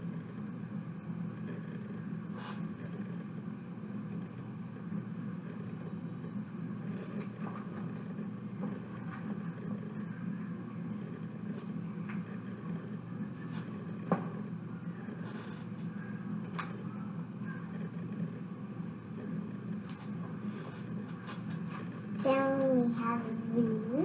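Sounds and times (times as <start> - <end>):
low background hum: 0.0 - 24.0.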